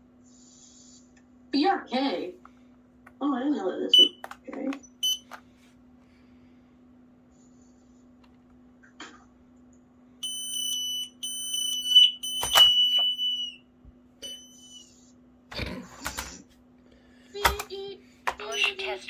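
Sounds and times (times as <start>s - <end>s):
smoke alarm beeping: 3.9s - 5.4s, 10.2s - 15.0s, 18.4s - 18.9s.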